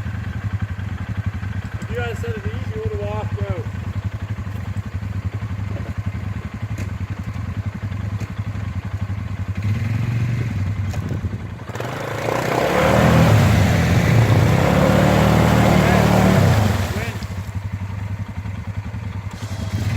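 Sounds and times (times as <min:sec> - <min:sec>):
atv engine idling and revving: 0:00.0 - 0:19.9.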